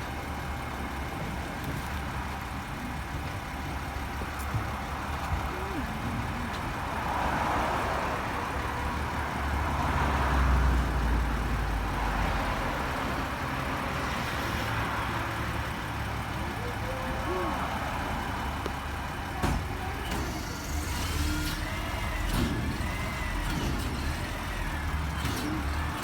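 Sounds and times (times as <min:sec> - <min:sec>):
vehicle engine rumbling: 0:00.0 - 0:26.0.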